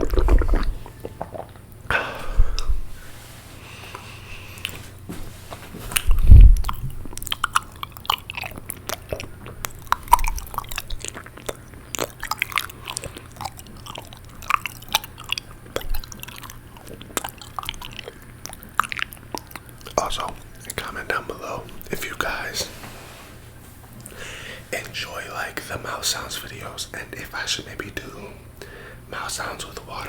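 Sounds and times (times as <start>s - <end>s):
wet mouth clicks and smacks: 0.0s - 1.8s, 5.9s - 20.8s.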